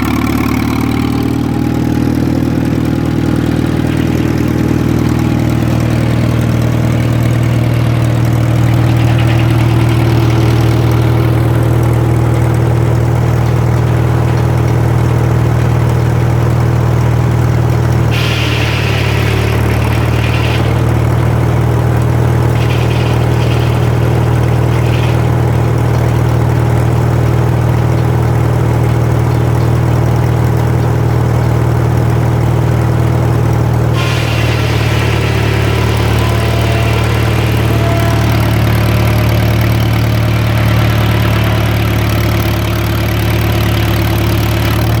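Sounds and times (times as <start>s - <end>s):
tractor engine running: 0.0s - 45.0s
high hissing noise: 18.1s - 26.4s.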